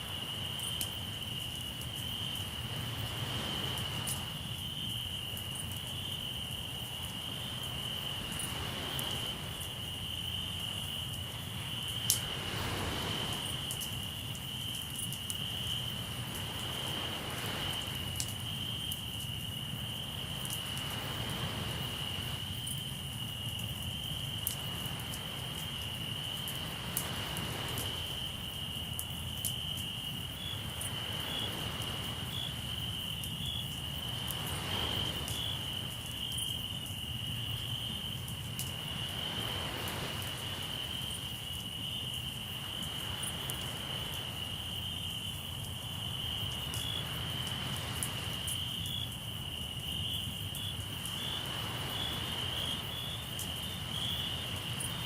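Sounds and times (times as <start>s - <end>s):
crickets trilling: 0.0s - 55.0s
sea surf: 2.4s - 4.5s, 7.3s - 9.6s, 10.5s - 14.2s, 15.8s - 18.5s, 20.1s - 22.9s, 24.5s - 28.4s, 30.0s - 33.0s, 33.9s - 36.1s, 38.7s - 41.5s, 50.8s - 55.0s.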